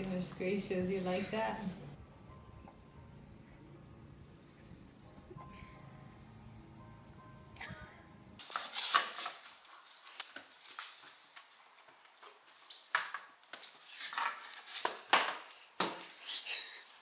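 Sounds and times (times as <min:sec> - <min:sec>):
background music: 0:00.0 - 0:08.7.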